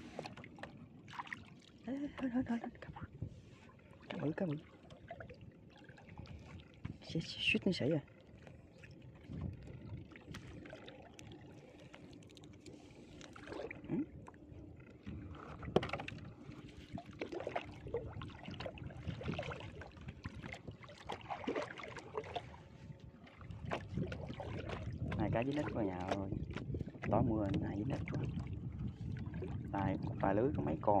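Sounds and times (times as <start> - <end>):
water splashing and dripping: 16.9 - 22.6, 23.3 - 30.0.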